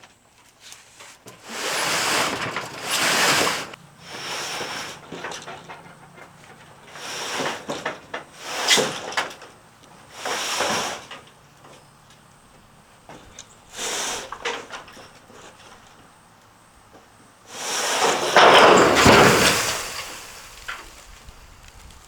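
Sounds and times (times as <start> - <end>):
roof panels scraping apart: 0.6 - 11.8, 17.5 - 22.0.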